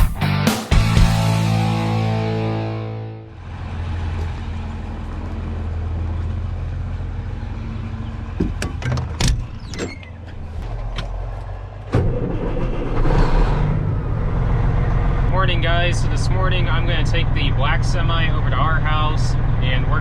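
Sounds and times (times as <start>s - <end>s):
vehicle engine running: 0.8s - 20.0s
sharp clicks and knocks: 8.4s - 11.2s.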